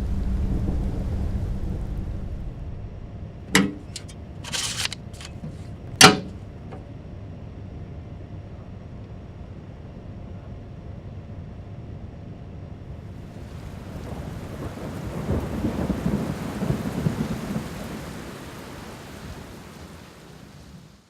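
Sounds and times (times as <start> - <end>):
scraping rustle: 3.5 - 6.4
hard thump: 3.6 - 6.4.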